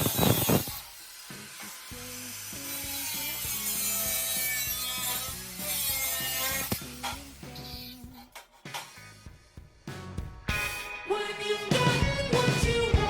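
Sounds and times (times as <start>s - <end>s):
background music with bass line: 8.8s - 13.0s.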